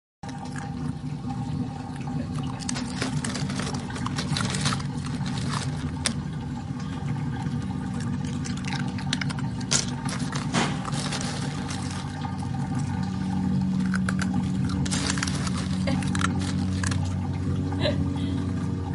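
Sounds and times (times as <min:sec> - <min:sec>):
steady low hum: 0:00.3 - 0:18.9
otter crunching and scraping ice: 0:02.6 - 0:06.3, 0:08.2 - 0:17.2.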